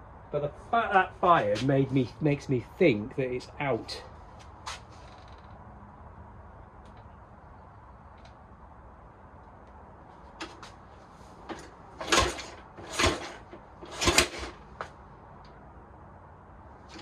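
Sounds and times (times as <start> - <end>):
engine firing bursts: 11.5 - 14.8.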